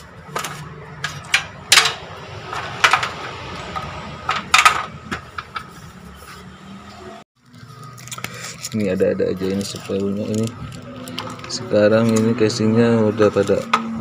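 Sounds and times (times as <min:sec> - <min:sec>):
computer parts clicking and knocking: 0:00.3 - 0:05.7.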